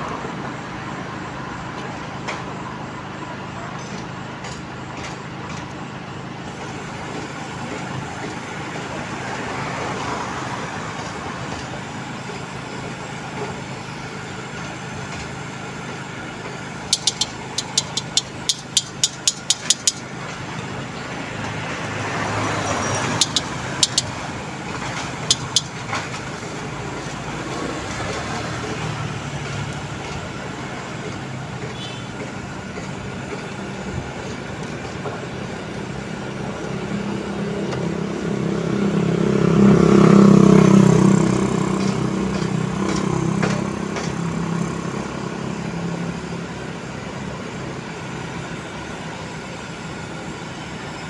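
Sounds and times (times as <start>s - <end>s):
road traffic: 0.0s - 51.0s
sharp high clicks: 16.9s - 20.4s, 22.8s - 26.0s.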